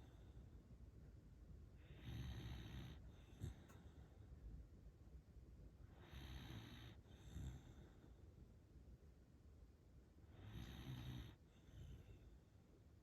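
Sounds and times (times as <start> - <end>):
dog snoring faintly: 1.8 - 4.1, 5.9 - 8.2, 10.3 - 12.4.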